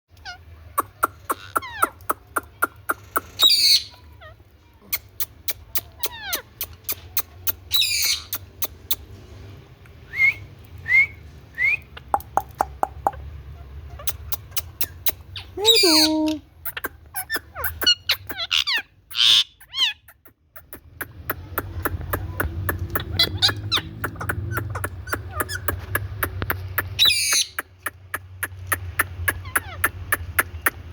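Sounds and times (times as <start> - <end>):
parakeet chirping: 0.2 - 4.3, 5.0 - 9.1, 11.8 - 30.9
regular ticking: 12.1 - 13.3, 20.2 - 30.9.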